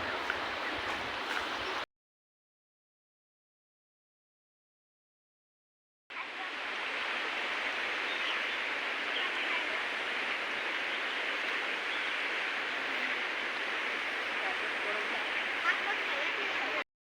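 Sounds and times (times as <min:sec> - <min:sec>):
water rushing: 0:00.0 - 0:01.8, 0:06.1 - 0:16.8.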